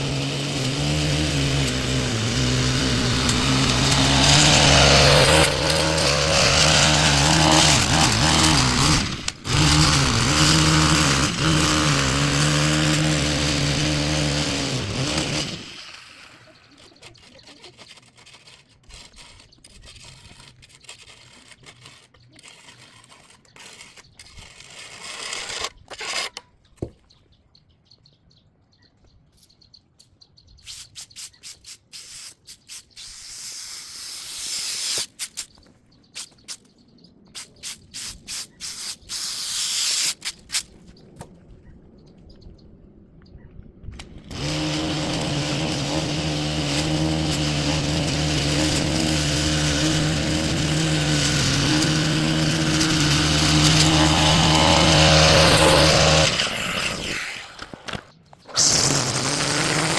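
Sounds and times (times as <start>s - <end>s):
engine starting and running: 0.0s - 19.1s, 44.0s - 59.9s
rustling and clicking handling noises: 16.6s - 27.1s.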